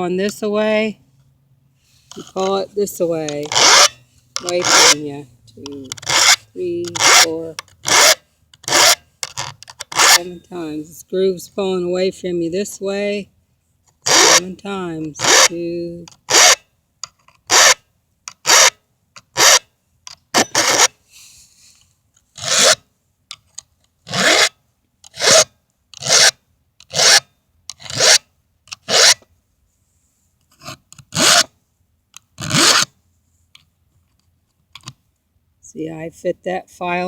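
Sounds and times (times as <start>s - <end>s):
file rasping on chainsaw chain: 2.1s - 2.6s, 3.2s - 10.4s, 14.0s - 14.5s, 15.2s - 15.6s, 16.3s - 16.6s, 17.5s - 19.6s, 20.4s - 20.9s, 22.4s - 22.8s, 24.1s - 29.2s, 30.6s - 31.5s, 32.4s - 32.9s.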